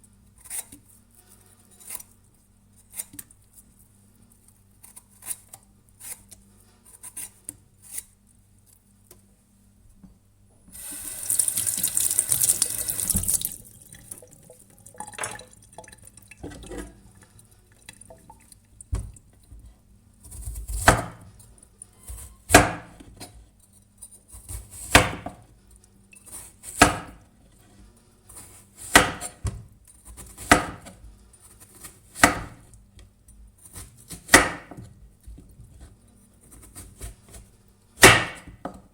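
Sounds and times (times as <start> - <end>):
tap running: 10.7 - 16.9.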